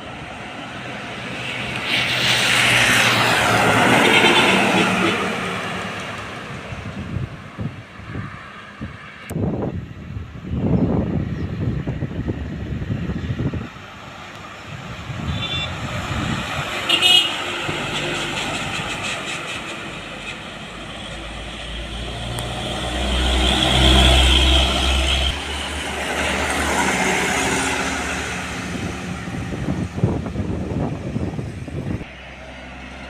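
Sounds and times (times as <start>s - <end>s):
trucks passing: 0.0s - 33.0s
truck horn toots: 15.2s - 15.9s, 16.8s - 17.6s.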